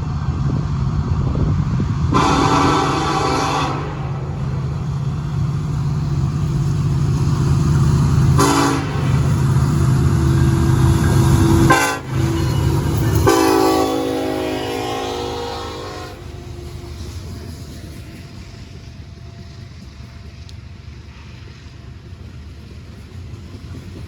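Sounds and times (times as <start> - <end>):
diesel locomotive droning: 0.0 - 24.0
locomotive air horn blasts: 2.1 - 4.4, 8.3 - 9.2, 11.4 - 16.8.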